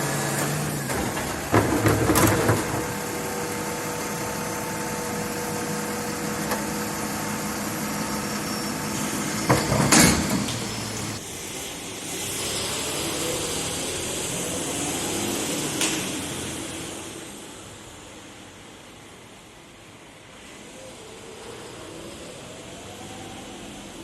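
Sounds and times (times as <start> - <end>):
garbage truck running with whine: 0.0 - 24.0.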